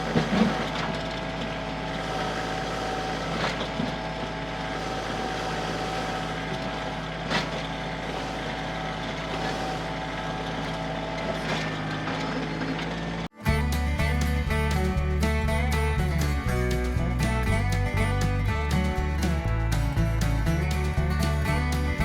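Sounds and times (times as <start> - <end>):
diesel engine running: 0.0 - 22.0
acoustic guitar music: 13.3 - 22.0.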